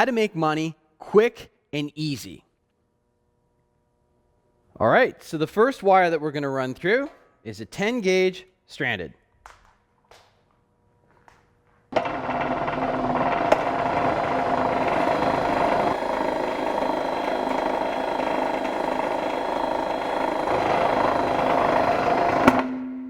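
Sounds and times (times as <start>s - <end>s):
power drill running: 11.9s - 22.7s.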